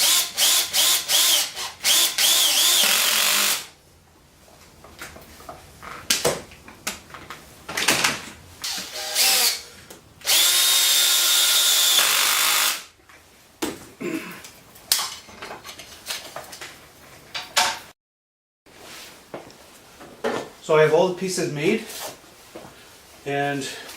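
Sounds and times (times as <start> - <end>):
power drill spinning: 0.0 - 3.7, 8.6 - 12.9.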